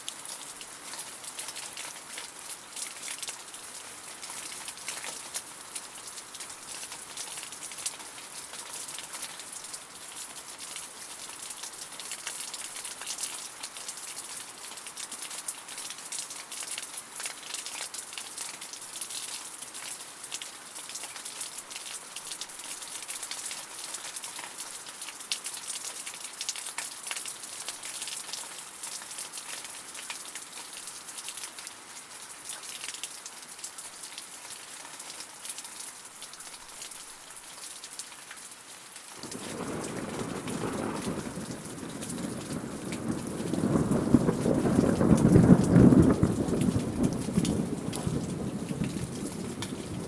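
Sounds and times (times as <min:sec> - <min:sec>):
steady rain falling: 0:00.0 - 0:50.0
rolling thunder: 0:39.2 - 0:50.0.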